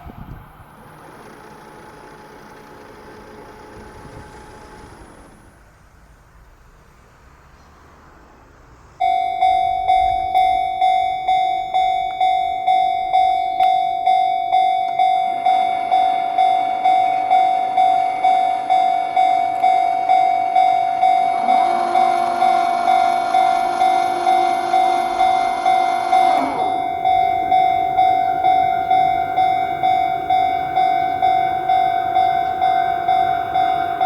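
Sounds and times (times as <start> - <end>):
level crossing warning bell: 9.0 - 34.0.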